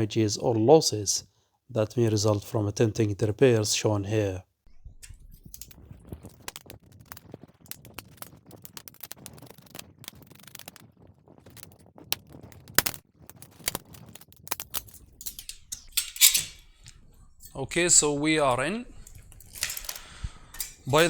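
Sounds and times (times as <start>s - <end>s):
small clicks and metallic rattles: 4.8s - 18.0s, 18.9s - 21.0s.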